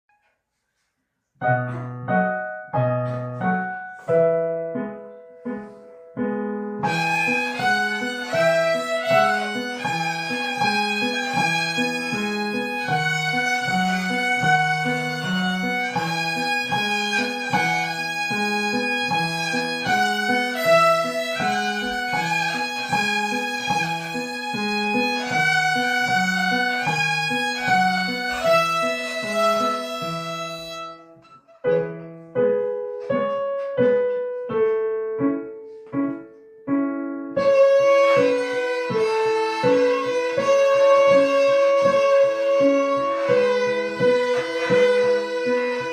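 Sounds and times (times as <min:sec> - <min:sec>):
keyboard accompaniment: 0:01.4 - 0:45.9
violins playing in unison: 0:06.8 - 0:31.1, 0:37.5 - 0:45.9.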